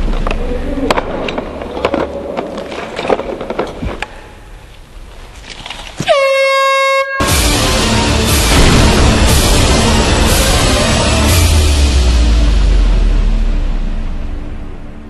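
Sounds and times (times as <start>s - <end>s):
loud horn blast: 6.1s - 13.8s.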